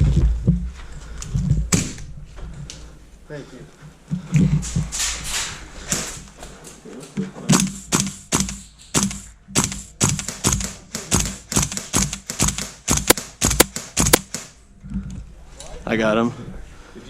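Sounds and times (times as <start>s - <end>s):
airsoft rifle shots: 7.5s - 14.6s.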